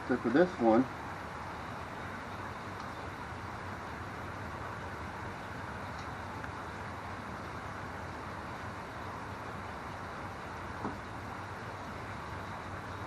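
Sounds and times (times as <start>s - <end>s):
faint small ticks: 2.7s - 3.0s.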